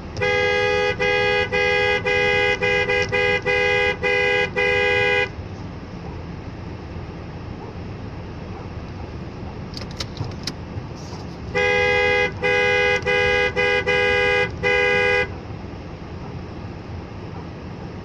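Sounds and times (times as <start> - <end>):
two-tone car horn honking: 0.1 - 5.4, 11.5 - 15.4.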